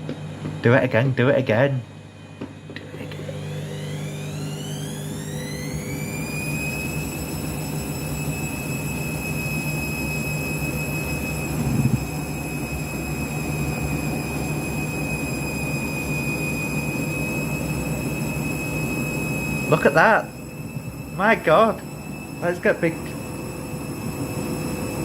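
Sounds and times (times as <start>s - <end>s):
washing machine motor whine: 0.0s - 25.0s
drum rumble: 11.5s - 12.4s.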